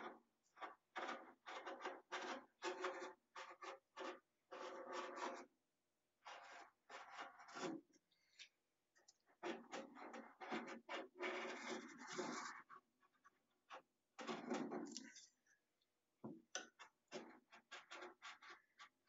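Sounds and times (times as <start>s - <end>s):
metal spatulas scraping ice cream: 9.4s - 12.8s.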